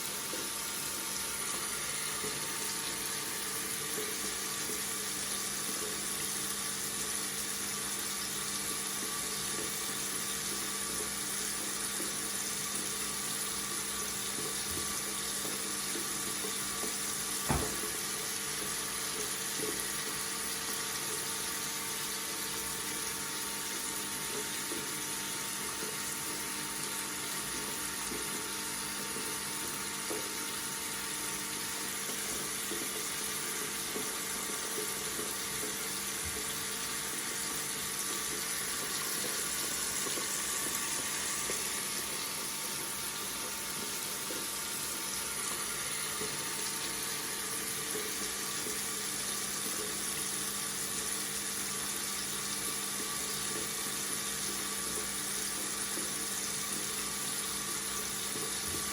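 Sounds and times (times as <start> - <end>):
tap running into sink: 14.3 - 20.7, 29.0 - 30.6, 32.0 - 36.6.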